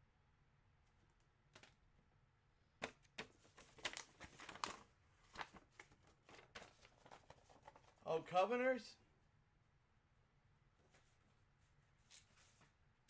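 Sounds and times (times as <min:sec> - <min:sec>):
plastic packaging crinkling: 0:03.3 - 0:08.0.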